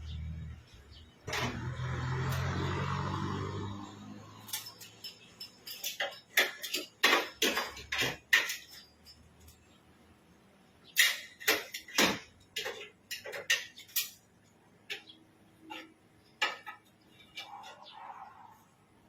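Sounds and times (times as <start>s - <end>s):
metallic clinks and clatters: 3.8s - 9.8s.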